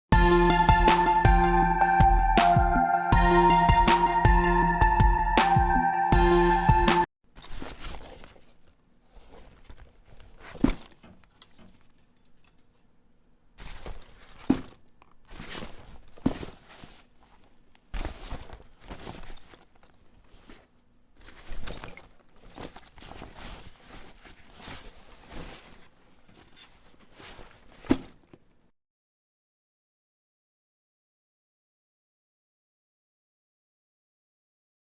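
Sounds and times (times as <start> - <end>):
fabric rustling: 13.6 - 28.6.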